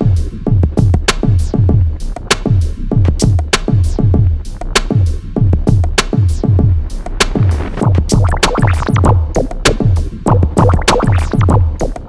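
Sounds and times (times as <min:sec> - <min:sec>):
fast bass drum beat: 0:00.0 - 0:12.0
sharp snare or hi-hat hits: 0:00.0 - 0:12.0
electronic dance music: 0:07.4 - 0:12.0.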